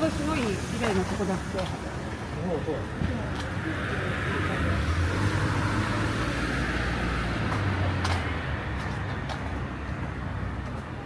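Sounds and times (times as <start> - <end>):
vehicle engine passing by: 3.6 - 9.6.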